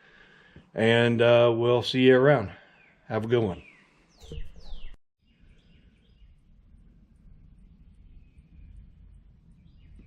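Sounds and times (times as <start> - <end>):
faint bird chirps: 2.4 - 10.0
steady low rumble: 6.0 - 10.0.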